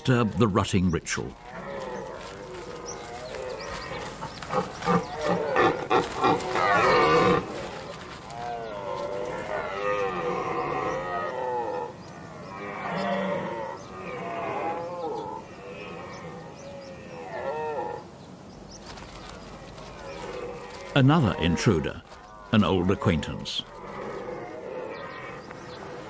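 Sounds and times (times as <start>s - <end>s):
deer stags roaring: 1.4s - 12.0s.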